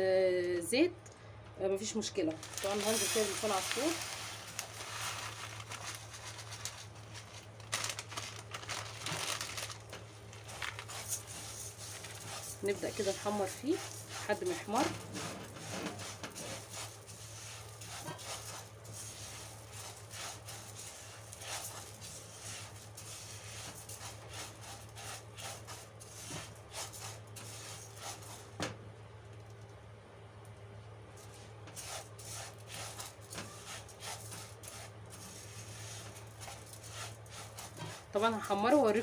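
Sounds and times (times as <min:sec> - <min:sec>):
steady low hum: 0:00.0 - 0:39.0
pasta crackling in frying pan: 0:02.4 - 0:15.1, 0:15.9 - 0:28.6.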